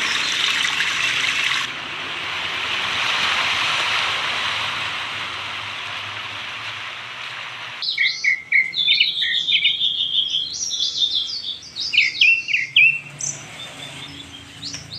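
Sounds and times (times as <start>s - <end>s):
birds chirping and singing: 0.0s - 1.7s, 7.8s - 14.9s
water rushing: 0.0s - 7.8s.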